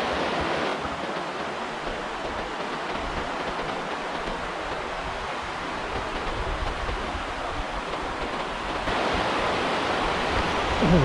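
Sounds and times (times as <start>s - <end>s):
flowing river water: 0.0s - 11.0s
low uneven rumble: 10.0s - 11.0s.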